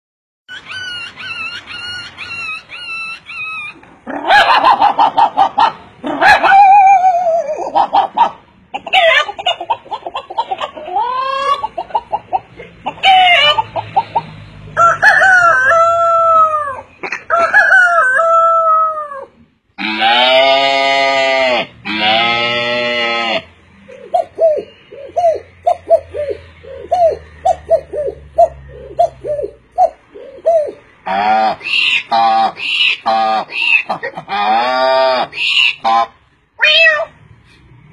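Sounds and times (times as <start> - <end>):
man imitating bird calls: 23.9 - 35.8.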